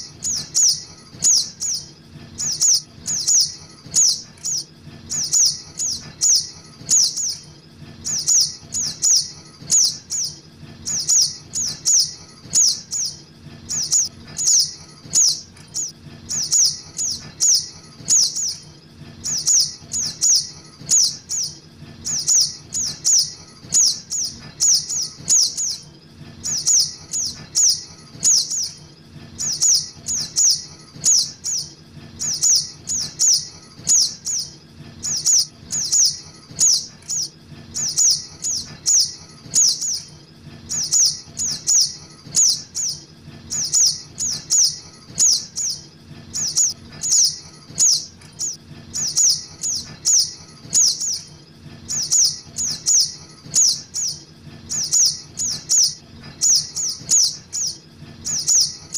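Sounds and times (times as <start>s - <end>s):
bird calling in sharp chirps: 0.0s - 18.6s, 19.2s - 28.8s, 29.4s - 51.3s, 51.9s - 58.9s.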